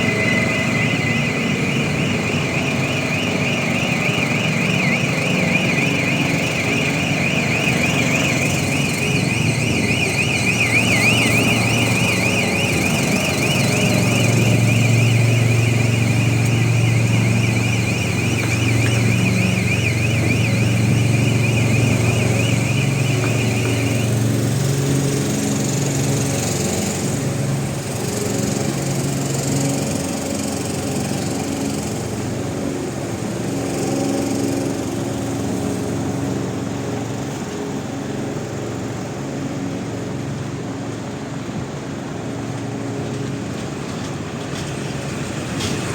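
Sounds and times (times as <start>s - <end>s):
car alarm warbling: 0.0s - 27.0s
generators humming: 0.0s - 45.9s.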